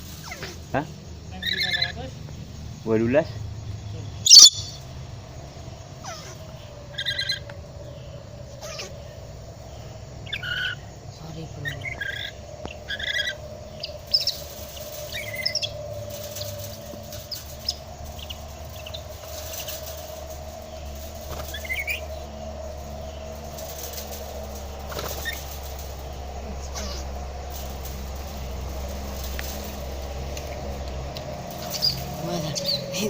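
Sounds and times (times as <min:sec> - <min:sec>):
parrot chirping: 0:04.2 - 0:04.8.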